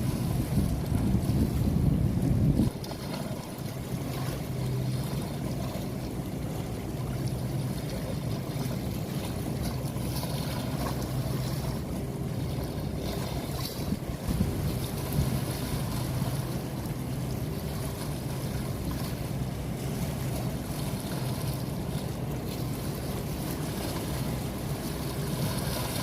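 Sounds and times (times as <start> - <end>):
wind noise: 0.0 - 3.3, 13.8 - 15.8
low engine hum: 0.0 - 26.0
water wash: 0.0 - 26.0.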